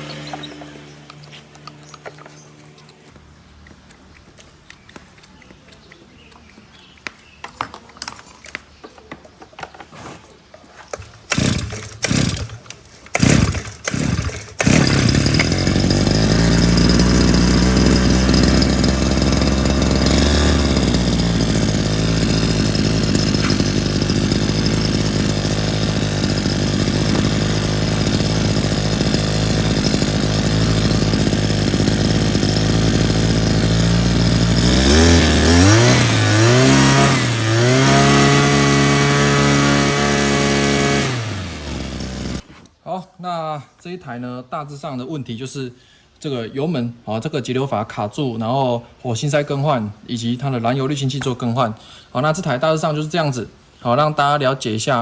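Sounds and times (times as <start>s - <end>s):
recoil starter pulls: 0.0s - 3.2s, 10.6s - 42.7s
two-stroke engine running: 0.0s - 3.2s, 10.9s - 42.6s.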